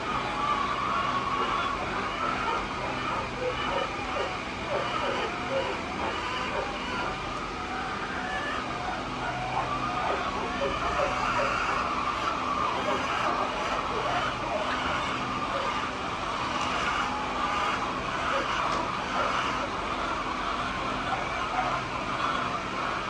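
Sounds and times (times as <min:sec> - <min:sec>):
chickens calling: 0:00.0 - 0:23.0.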